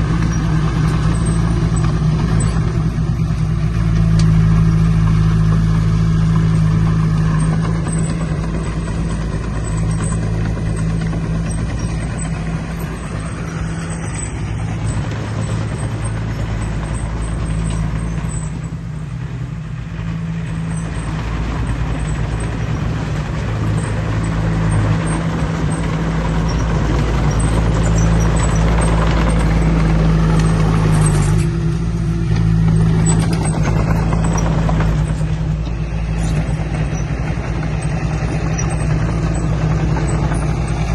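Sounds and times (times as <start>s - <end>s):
heavy machinery diesel engine running: 0.0s - 40.9s.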